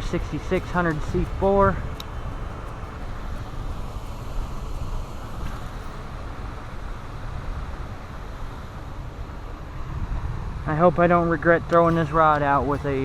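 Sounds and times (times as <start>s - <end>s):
water rushing over spillway: 0.0s - 9.8s.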